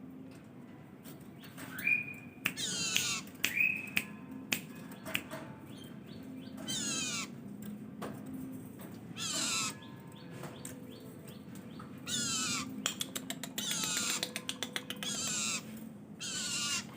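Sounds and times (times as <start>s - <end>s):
bird clicking notes: 2.4s - 5.4s, 12.3s - 15.6s
harsh downward-sliding bird calls: 6.7s - 7.3s, 9.2s - 9.9s, 12.0s - 12.8s, 15.0s - 16.9s.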